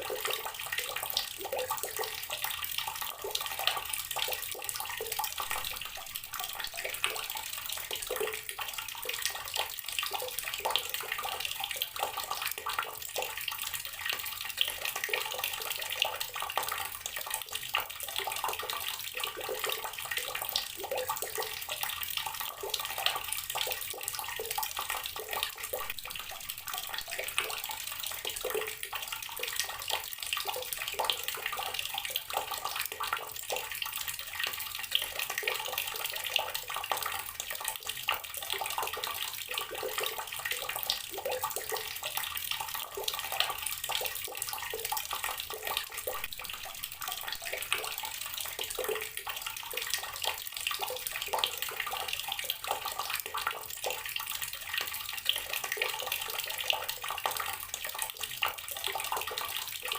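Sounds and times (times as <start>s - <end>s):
water running from a tap: 0.0s - 59.9s.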